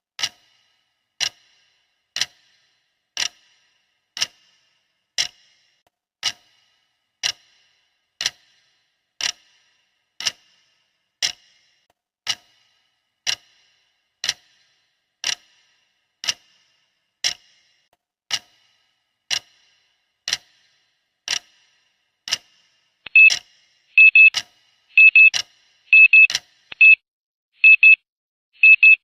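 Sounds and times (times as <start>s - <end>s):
clock ticking: 0.2s - 27.0s
electronic alarm double beeps: 23.1s - 23.4s, 24.0s - 24.3s, 25.0s - 25.3s, 25.9s - 27.0s, 27.6s - 28.0s, 28.6s - 29.0s.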